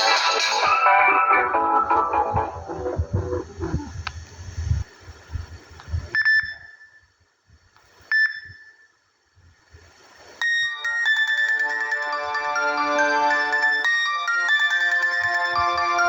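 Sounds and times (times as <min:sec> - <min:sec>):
phone ringtone melody: 0:10.4 - 0:16.0.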